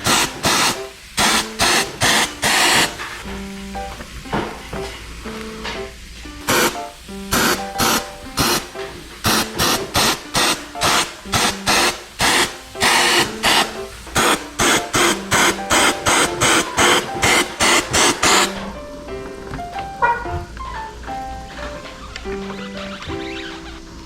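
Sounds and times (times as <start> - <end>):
aerosol spray hissing bursts: 0.0 - 18.6
background music: 0.0 - 24.0.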